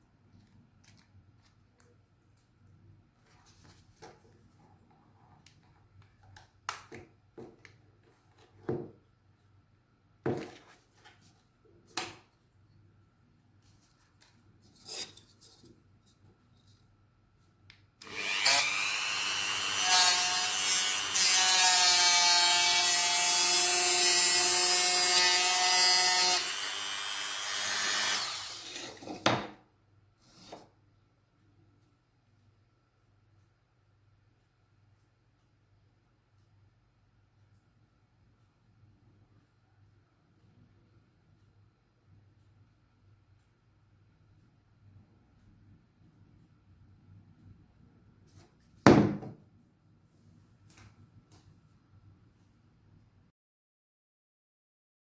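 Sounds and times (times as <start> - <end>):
high-speed power tool whine: 18.0 - 21.2.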